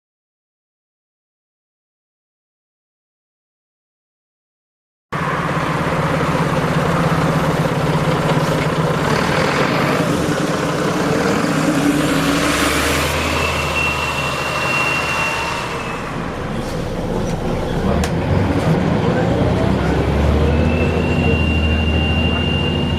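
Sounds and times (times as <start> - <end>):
bus engine drone: 5.1 - 22.9
road noise: 5.1 - 22.9
high-pitched screech: 11.1 - 18.4, 20.2 - 22.9.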